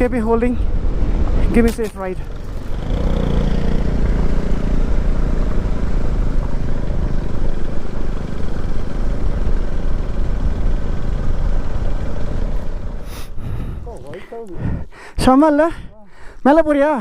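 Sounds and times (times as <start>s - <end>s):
motorcycle engine rumble: 0.6s - 16.4s
wind rush on microphone: 13.3s - 16.0s.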